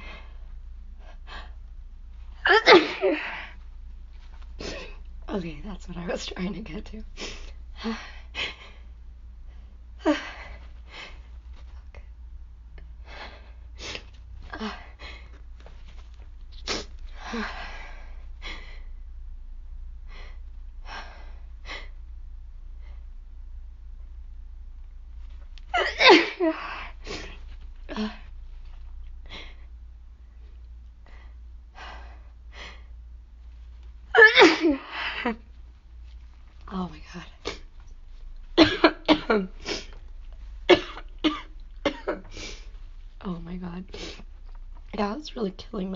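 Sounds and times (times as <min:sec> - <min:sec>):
woman breathing faintly: 0:12.8 - 0:19.2, 0:20.0 - 0:23.3, 0:26.6 - 0:34.0.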